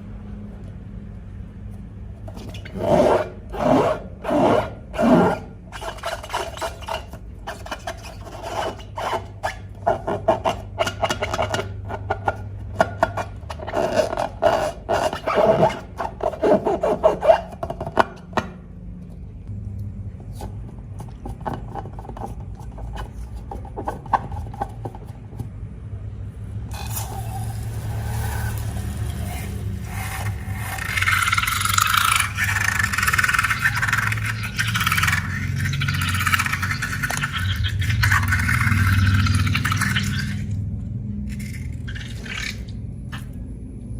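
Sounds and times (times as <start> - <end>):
low hum: 19.3 - 21.2
slime scraping and crackling: 26.8 - 40.5.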